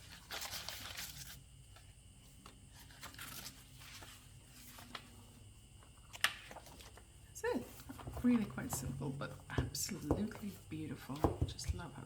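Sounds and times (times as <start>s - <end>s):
paper pages rustling: 0.0s - 8.8s.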